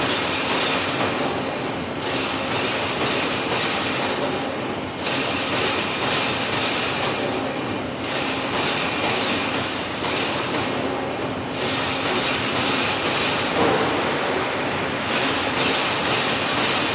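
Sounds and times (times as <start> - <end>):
fence-making machine clatter: 0.0 - 14.0, 15.1 - 16.9.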